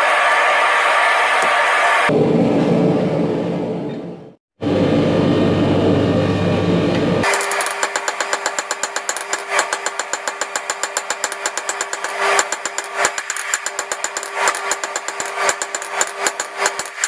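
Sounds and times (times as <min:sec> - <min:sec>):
dense steady roar: 0:00.0 - 0:07.2
motor hum: 0:02.1 - 0:07.4.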